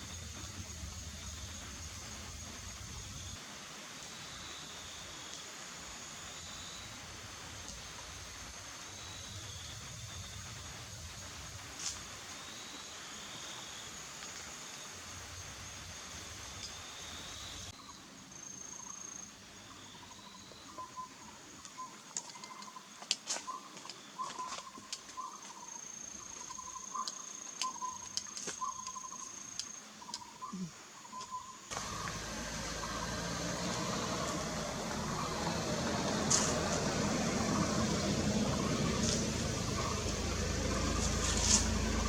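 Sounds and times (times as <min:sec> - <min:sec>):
steady rushing noise: 0:00.0 - 0:03.8, 0:31.7 - 0:42.0.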